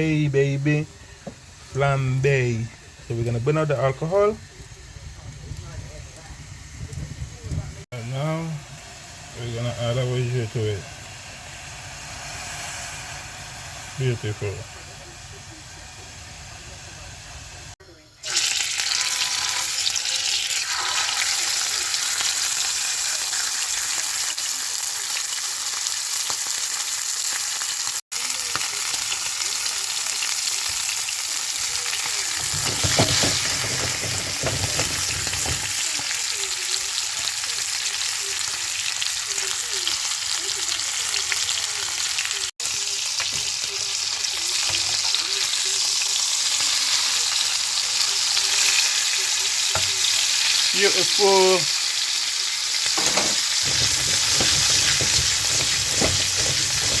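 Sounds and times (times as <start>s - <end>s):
food sizzling in a frying pan: 0.0s - 57.0s
stirring in a pan: 32.3s - 36.1s, 52.8s - 57.0s.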